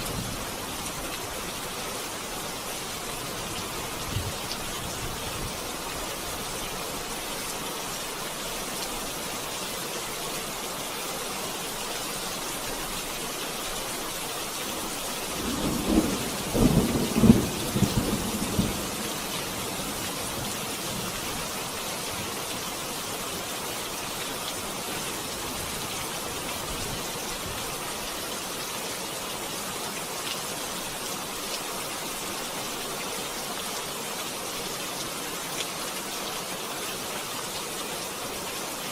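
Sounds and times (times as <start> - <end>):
rain hissing: 0.0 - 38.9.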